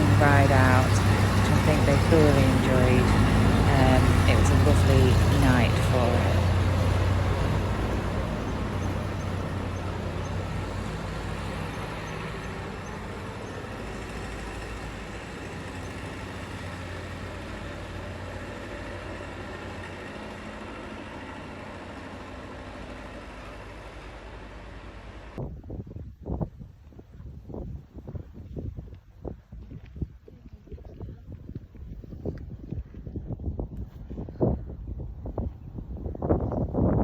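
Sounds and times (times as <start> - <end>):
tractor engines humming: 0.0 - 25.4.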